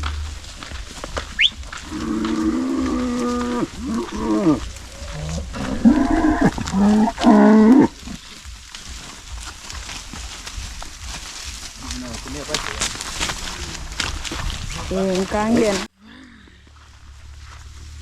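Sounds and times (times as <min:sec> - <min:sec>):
cattle mooing: 0:01.8 - 0:08.2.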